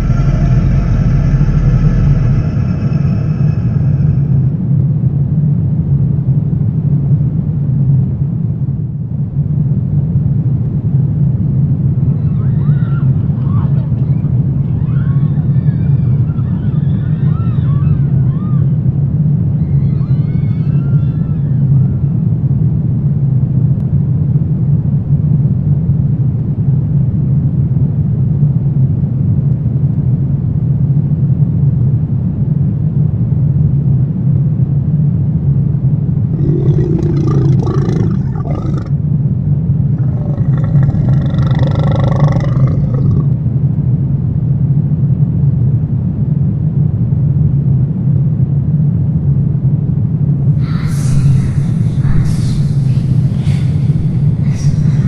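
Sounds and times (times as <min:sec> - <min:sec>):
eerie wavering tones: 0:00.0 - 0:04.8
low rumbling drone: 0:00.0 - 0:06.0, 0:36.2 - 0:43.6, 0:50.6 - 0:55.0.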